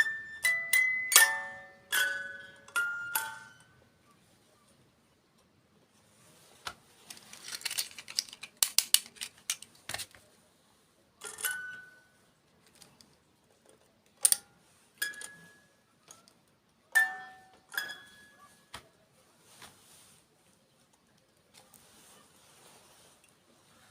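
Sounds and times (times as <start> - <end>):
packaging crinkling and clicking: 7.0 - 10.3.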